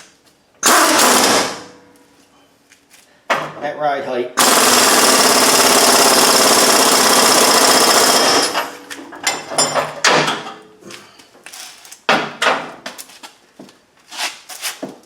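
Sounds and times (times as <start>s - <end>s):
impact wrench hammering: 0.6s - 1.8s
metal tools clanking: 8.5s - 10.7s.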